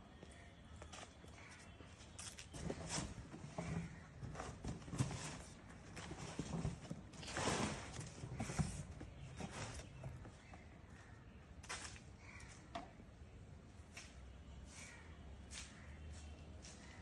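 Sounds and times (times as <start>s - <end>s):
rustling: 1.4s - 10.6s.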